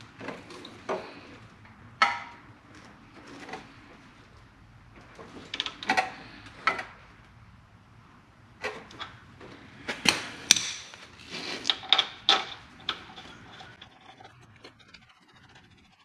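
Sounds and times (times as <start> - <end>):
metal scraping: 11.2 - 16.0.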